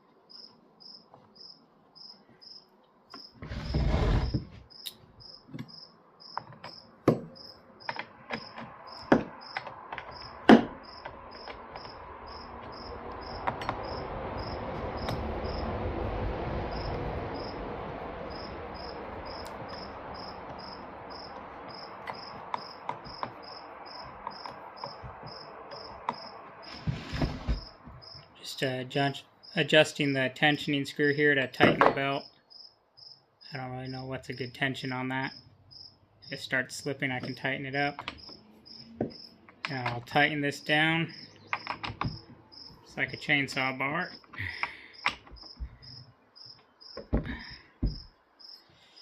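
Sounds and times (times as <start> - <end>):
crickets chirping: 0.0 - 3.4, 4.2 - 30.2, 32.1 - 49.0
broad rushing sound: 14.0 - 20.2.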